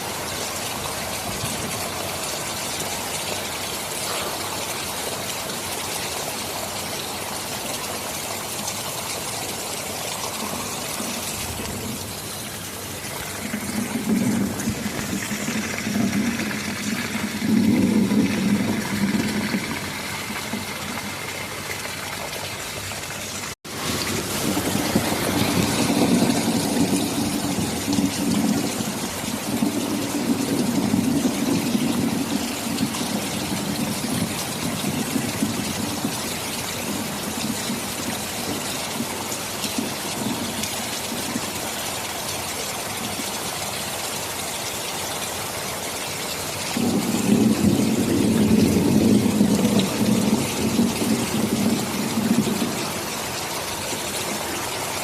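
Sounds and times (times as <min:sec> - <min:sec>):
heavy rain: 0:00.0 - 0:55.0
low rolling thunder: 0:10.1 - 0:21.6, 0:23.7 - 0:41.4, 0:46.8 - 0:54.6.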